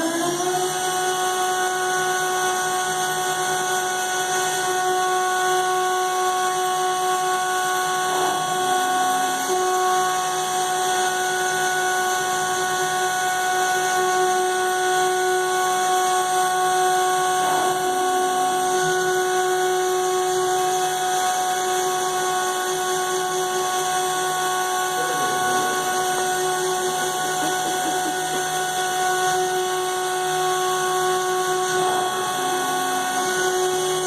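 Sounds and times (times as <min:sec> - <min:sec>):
router spindle whining: 0:00.0 - 0:34.0.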